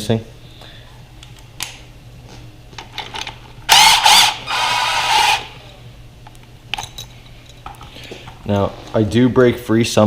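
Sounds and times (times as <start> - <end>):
power tool whining: 3.7 - 5.8.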